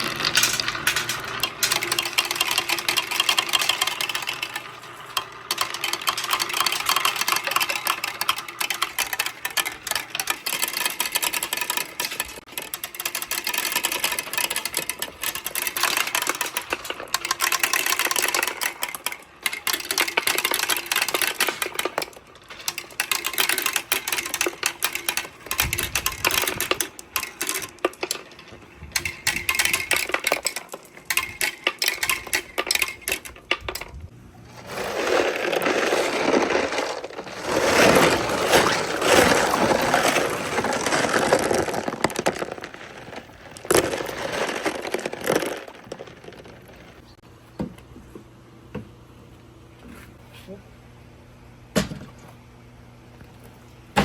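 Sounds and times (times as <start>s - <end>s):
marbles clattering down a run: 0.0s - 33.9s, 34.7s - 47.2s.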